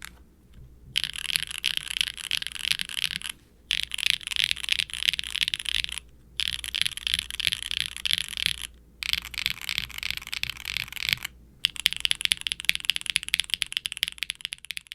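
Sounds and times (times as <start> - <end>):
typing on mechanical keyboard: 1.0 - 14.9.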